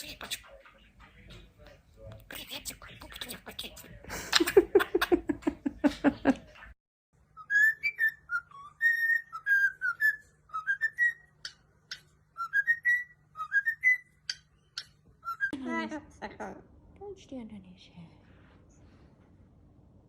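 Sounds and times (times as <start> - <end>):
bird whistling: 7.4 - 15.5.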